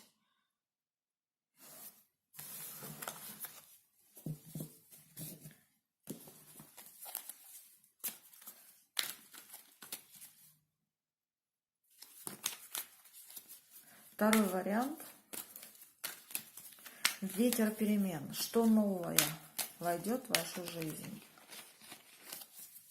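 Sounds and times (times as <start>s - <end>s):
cards being shuffled: 6.1s - 10.5s, 12.0s - 22.9s.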